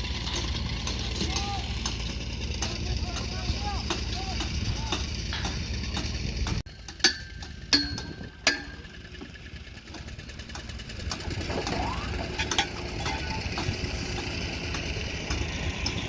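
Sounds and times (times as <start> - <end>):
low engine running: 0.0 - 16.0
metal tool striking: 6.7 - 9.0, 11.6 - 14.3.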